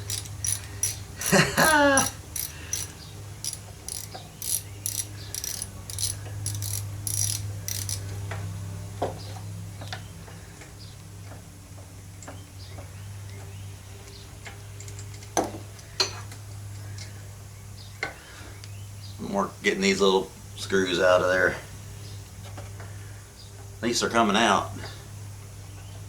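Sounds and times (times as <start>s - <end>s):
hand tool clicking: 0.0s - 8.1s.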